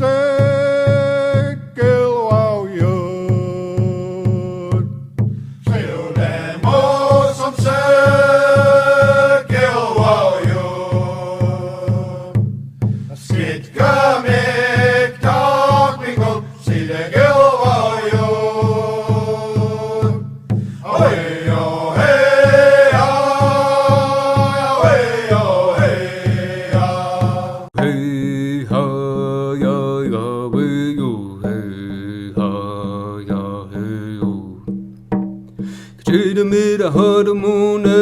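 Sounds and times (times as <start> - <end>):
low steady beat: 0.0 - 38.0
chanted song: 5.7 - 12.4, 13.1 - 20.2, 20.8 - 33.0.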